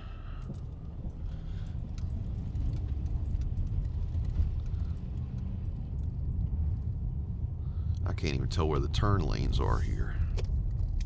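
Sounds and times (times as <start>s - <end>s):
faint clicks and ticks: 0.0s - 7.2s
car engine and road rumble: 0.0s - 11.0s.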